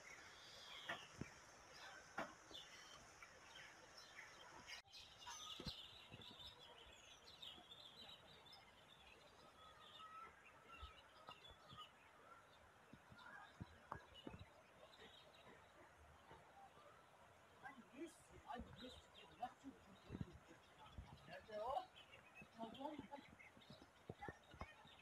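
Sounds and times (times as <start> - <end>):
faint high-pitched chirps: 0.0 - 17.1.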